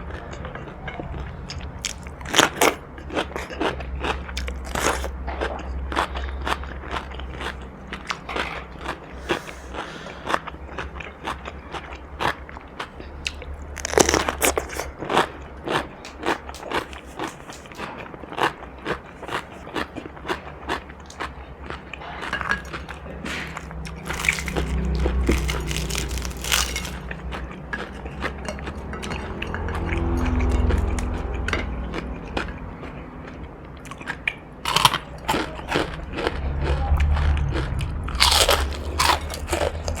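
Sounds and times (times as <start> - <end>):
chewing crunchy food: 0.0 - 40.0
low hum: 34.6 - 40.0.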